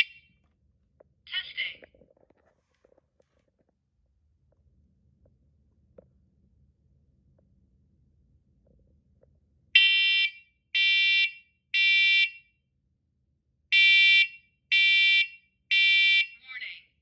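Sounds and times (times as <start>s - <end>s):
shrill alarm beeps: 0.0s - 0.2s.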